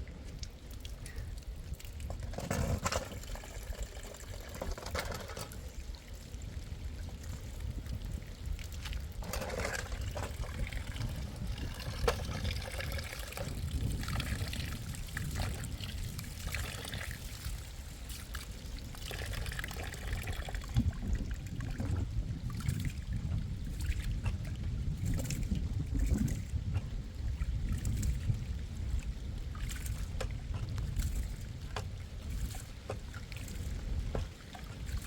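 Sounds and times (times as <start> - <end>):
water pouring and trickling: 0.0 - 35.0
steady low rumble: 5.6 - 17.4.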